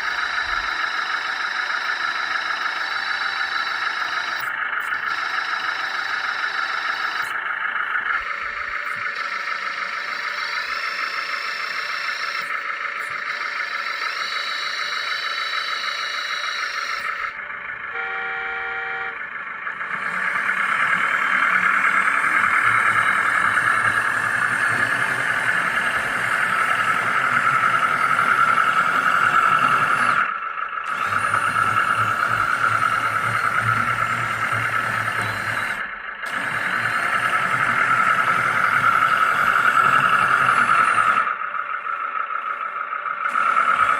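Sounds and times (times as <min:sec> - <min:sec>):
hydraulic pump whining: 0:00.0 - 0:43.9
short pitched tone: 0:12.1 - 0:19.3.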